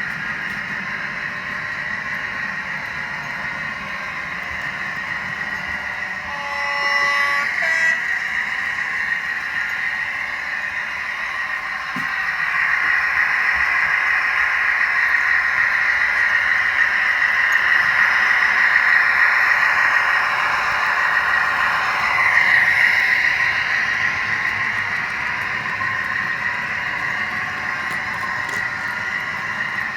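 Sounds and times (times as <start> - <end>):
locomotive horn blast: 6.2 - 8.5.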